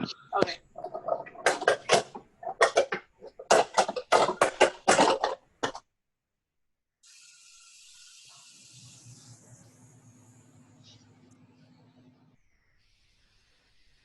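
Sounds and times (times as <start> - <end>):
steady hiss: 7.0 - 11.4, 12.5 - 14.0.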